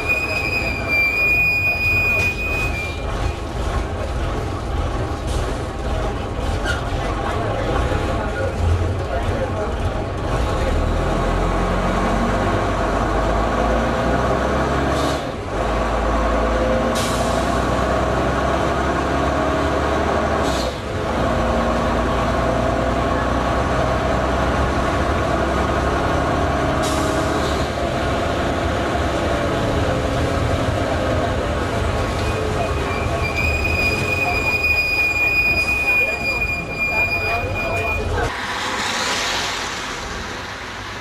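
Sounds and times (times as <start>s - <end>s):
bus diesel engine running: 0.0s - 41.0s
air brake hisses: 26.8s - 27.7s, 38.3s - 41.0s.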